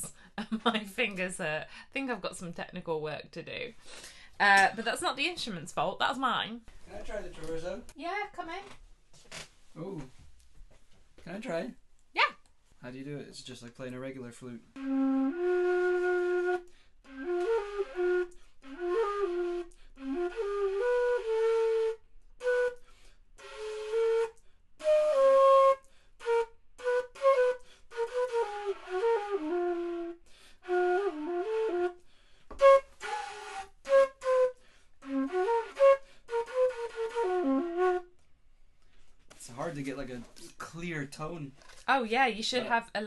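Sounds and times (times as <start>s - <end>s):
breathy flute notes: 14.8s - 38.2s.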